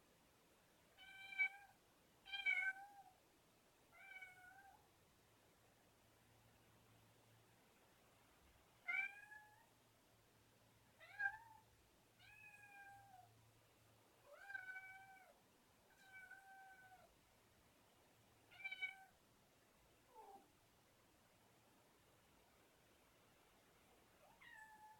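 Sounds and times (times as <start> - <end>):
cat meowing: 1.0 - 1.7, 2.3 - 3.1, 4.0 - 4.8, 8.9 - 9.7, 11.0 - 11.6, 12.2 - 13.3, 14.3 - 17.1, 18.5 - 19.2, 24.2 - 24.9.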